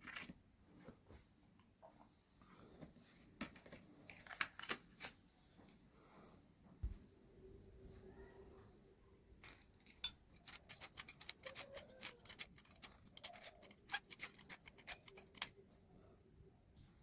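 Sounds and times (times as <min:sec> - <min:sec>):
sharp clicks and snips: 0:09.4 - 0:15.6.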